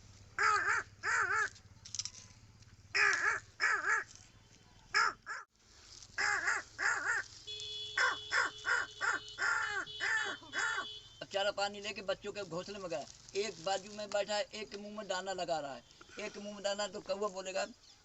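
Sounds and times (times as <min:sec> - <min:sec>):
man imitating crow caws: 0:00.4 - 0:01.6, 0:02.9 - 0:04.1, 0:04.9 - 0:05.5, 0:06.2 - 0:07.3, 0:08.0 - 0:11.0.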